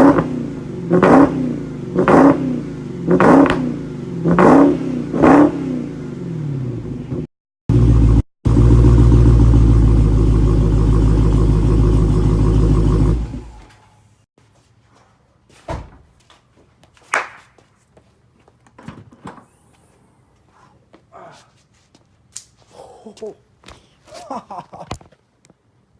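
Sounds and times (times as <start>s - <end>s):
car engine revving: 0.0s - 13.6s.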